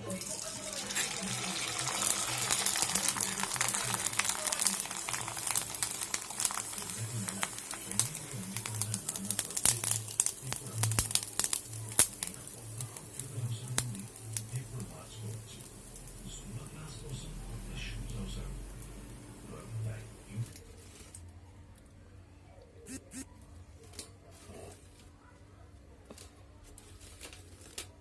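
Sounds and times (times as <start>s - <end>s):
crinkling with sharp clicks: 26.1s - 28.0s.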